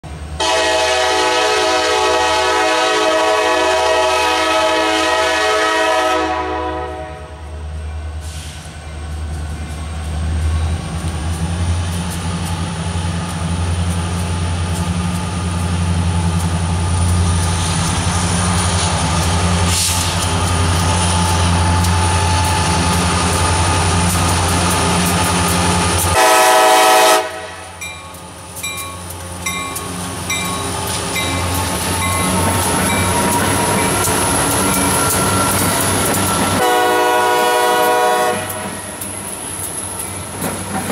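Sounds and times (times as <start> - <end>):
diesel locomotives rumbling: 0.0 - 40.9
train horn: 0.4 - 7.7, 26.1 - 27.8, 36.5 - 38.8
wheels clicking over rail joints: 8.6 - 26.2, 27.8 - 36.9, 37.8 - 40.9.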